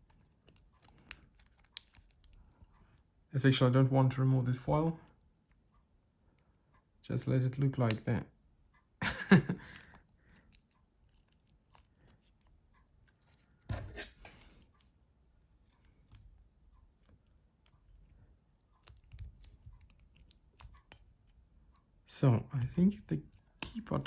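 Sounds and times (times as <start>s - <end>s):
phone parts clicking and scraping: 0.0s - 2.8s, 10.4s - 15.0s, 17.0s - 21.4s.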